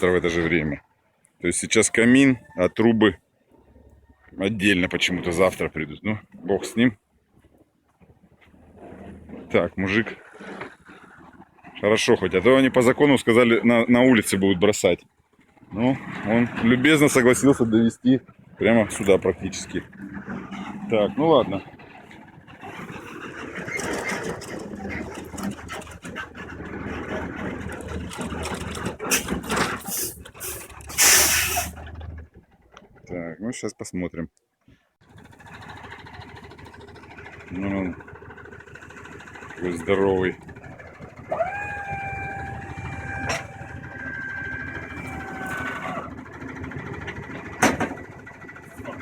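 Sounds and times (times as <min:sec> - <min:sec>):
truck engine running: 0:06.7 - 0:33.2, 0:35.0 - 0:49.0
short bursts of hissing: 0:29.9 - 0:31.7
hydraulic pump motor whining: 0:40.4 - 0:47.6.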